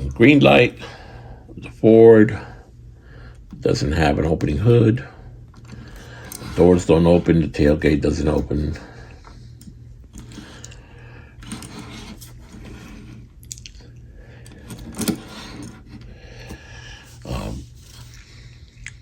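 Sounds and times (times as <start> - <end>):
steady low hum: 0.0 - 19.0
toy trucks scraping and clicking: 11.4 - 13.3, 14.4 - 16.6.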